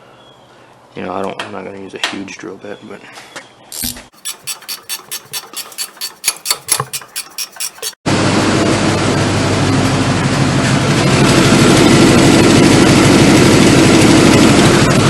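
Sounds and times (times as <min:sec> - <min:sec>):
rapid sharp clicks: 0:04.2 - 0:08.0.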